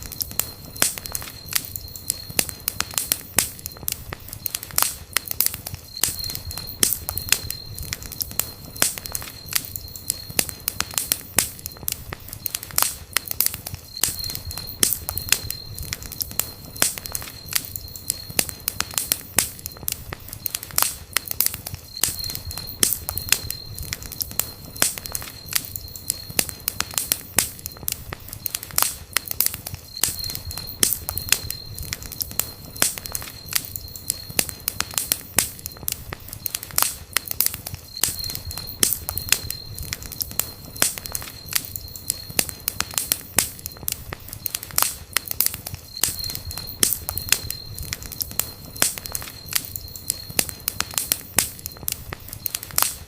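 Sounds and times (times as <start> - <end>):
campfire crackling and popping: 0.0 - 53.0
thin high whistle: 5.5 - 12.7, 29.5 - 35.8, 37.5 - 43.8, 44.4 - 52.8.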